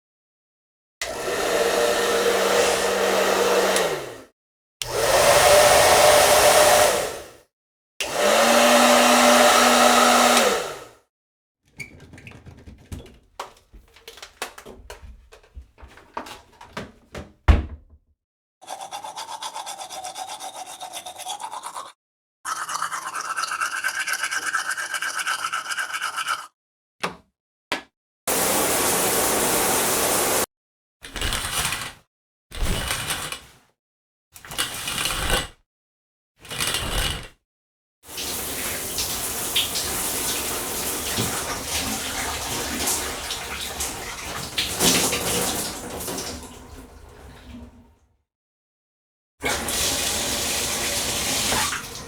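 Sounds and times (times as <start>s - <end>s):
clicks and rattles: 11.7s - 18.0s.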